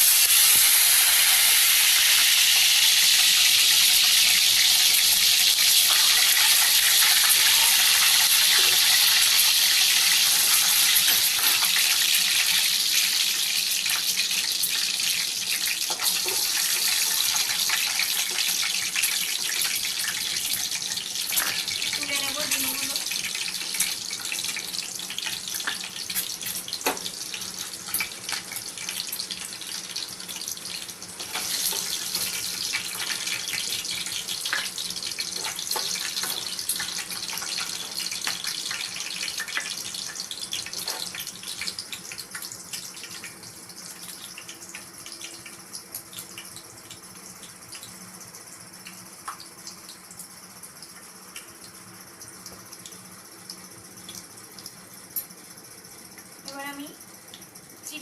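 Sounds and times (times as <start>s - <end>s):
eggs sizzling in hot oil: 0.0s - 58.0s.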